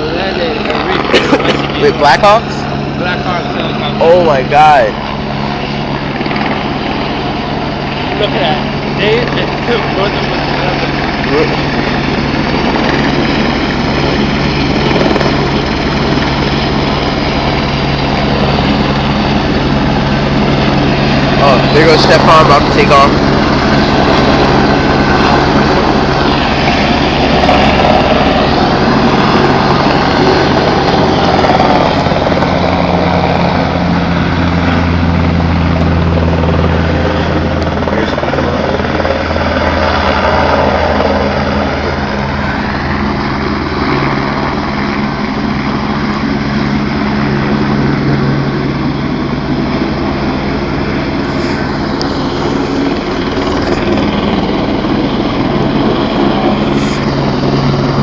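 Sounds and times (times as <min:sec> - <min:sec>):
light aircraft engine and propeller drone: 0:00.0 - 0:58.0.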